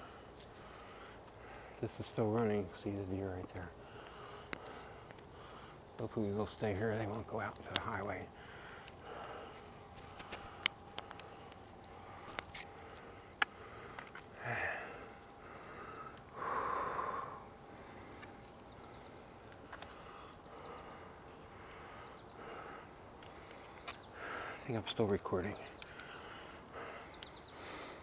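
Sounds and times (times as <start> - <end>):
high-pitched insect drone: 0.0 - 28.0
sharp clicks: 7.4 - 8.0.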